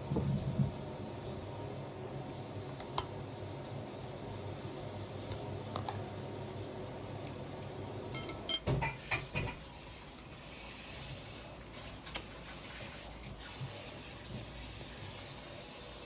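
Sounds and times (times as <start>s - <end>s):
steady low hum: 0.0s - 9.3s
tableware clinking: 8.1s - 9.6s.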